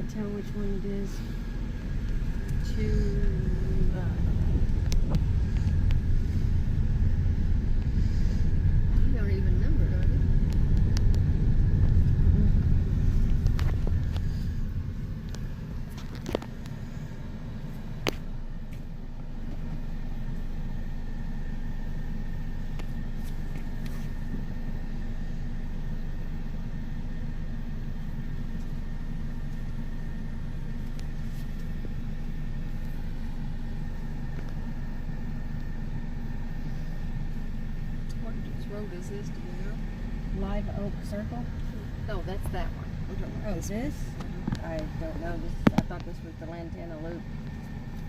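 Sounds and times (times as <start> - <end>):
car driving slowly: 0.0 - 48.0.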